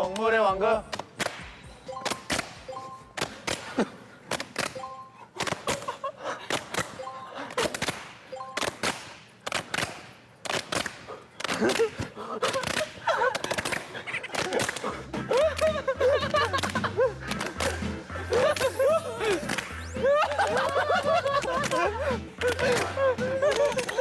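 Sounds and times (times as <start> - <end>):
hand claps and slaps: 0.9 - 2.6, 7.6 - 18.8, 20.7 - 24.0
voices calling out: 13.0 - 24.0.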